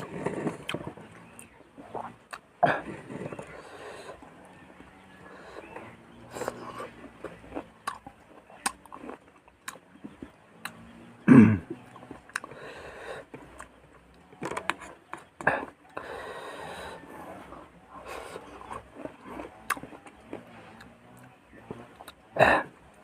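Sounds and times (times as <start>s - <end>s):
person chewing fruit: 0.0s - 23.0s
throat clearing or cough: 11.2s - 11.8s, 22.3s - 22.8s.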